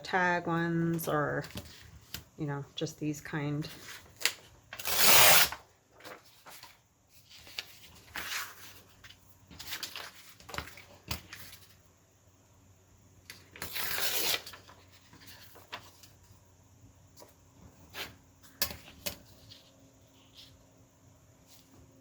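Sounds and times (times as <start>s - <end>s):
paper rustling: 3.7s - 11.8s, 13.5s - 16.3s.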